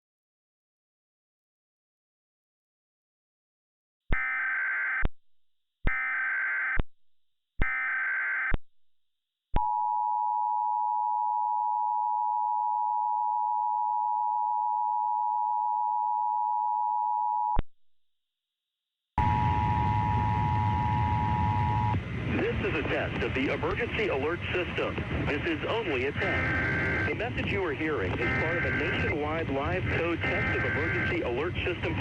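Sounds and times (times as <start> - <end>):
two-tone attention signal: 19.2 - 22.0, 26.2 - 27.2, 28.2 - 29.2, 29.8 - 31.4.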